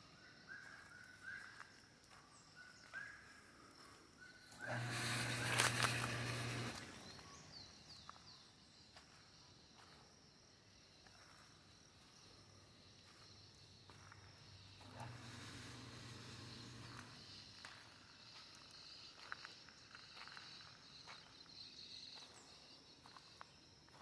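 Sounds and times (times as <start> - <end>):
bird chirps: 0.0 - 3.4
steady low hum: 4.5 - 7.6, 14.4 - 17.7
footsteps through leaf litter: 4.6 - 7.4.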